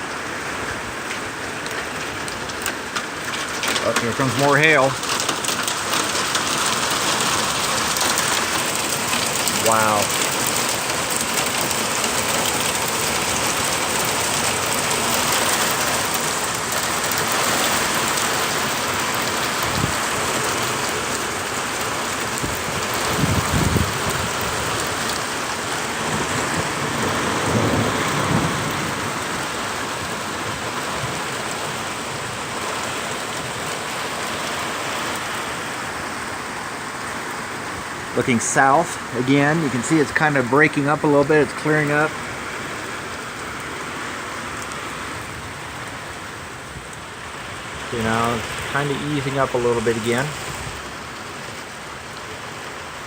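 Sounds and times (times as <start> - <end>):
heavy rain and hail pouring: 0.0 - 53.0
thunder rumbling: 3.7 - 32.4.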